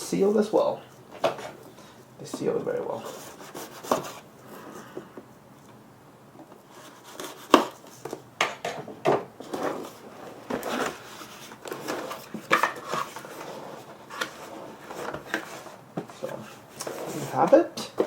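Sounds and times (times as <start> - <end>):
cardboard box rustling and scraping: 2.8 - 4.3, 9.4 - 17.6.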